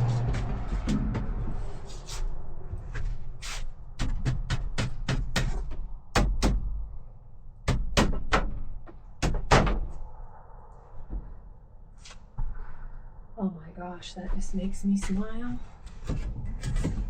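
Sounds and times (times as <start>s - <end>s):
sharp knocks on wood: 4.0s - 6.7s, 7.7s - 9.9s.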